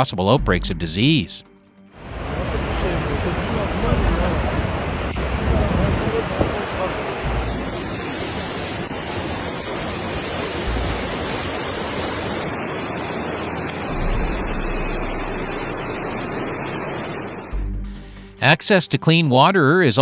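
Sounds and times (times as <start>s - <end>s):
rushing floodwater roar: 2.0s - 17.6s
low rumbling swells: 2.0s - 18.4s.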